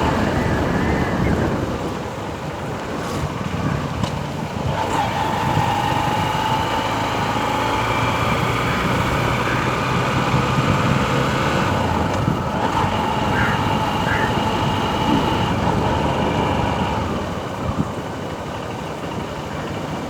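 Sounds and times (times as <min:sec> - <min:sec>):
motorcycle engine running: 0:00.0 - 0:20.0
wind and road noise: 0:00.0 - 0:20.0
steady whine: 0:07.9 - 0:17.0.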